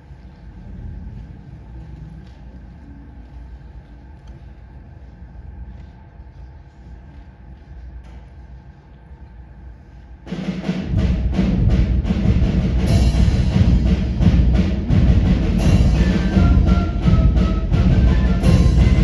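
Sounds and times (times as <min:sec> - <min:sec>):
hall hum: 0:00.0 - 0:19.0
heavy drum and percussion strokes: 0:10.2 - 0:19.0
concert band playing: 0:12.6 - 0:19.0.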